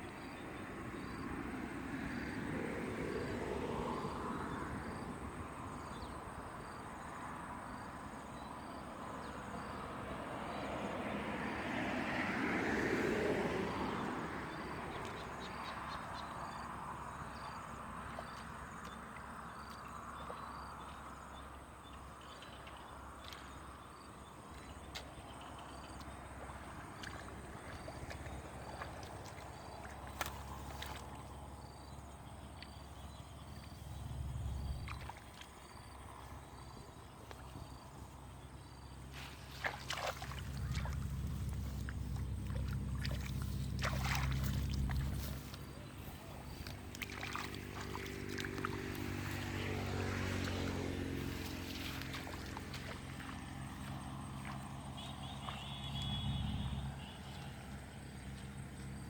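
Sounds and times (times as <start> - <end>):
insects chirping: 13.8 - 59.0.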